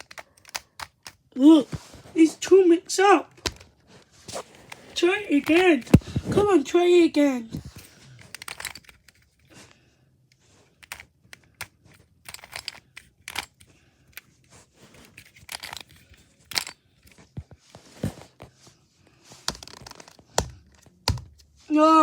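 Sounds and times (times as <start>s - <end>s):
puzzle cube plastic clicks: 0.0s - 1.3s, 4.4s - 6.5s, 7.5s - 9.4s, 10.7s - 16.8s, 19.5s - 21.4s.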